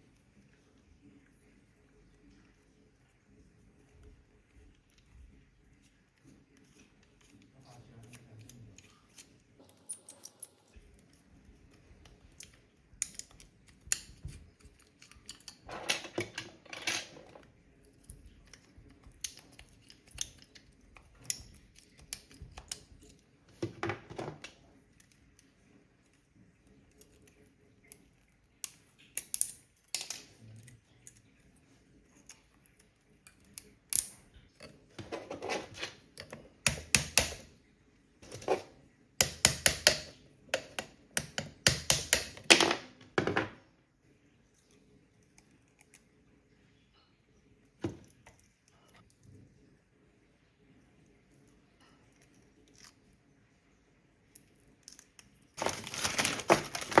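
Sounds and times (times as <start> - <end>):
tools clicking and snipping: 33.3 - 37.5, 39.2 - 42.6
tool scraping plastic: 35.0 - 36.0.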